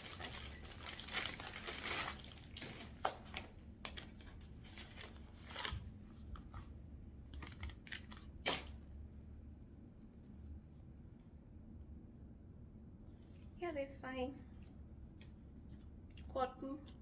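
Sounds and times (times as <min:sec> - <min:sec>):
packaging and clothes rustling: 0:00.0 - 0:08.8.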